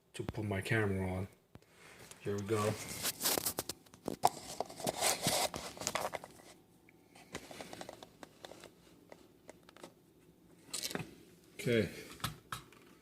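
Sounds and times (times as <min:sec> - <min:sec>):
objects scraping and rustling: 0:01.9 - 0:11.2.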